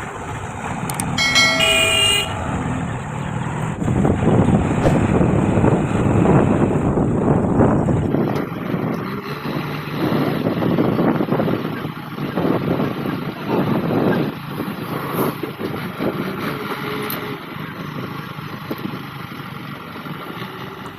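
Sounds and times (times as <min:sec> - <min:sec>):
diesel engine running: 0:00.0 - 0:20.9.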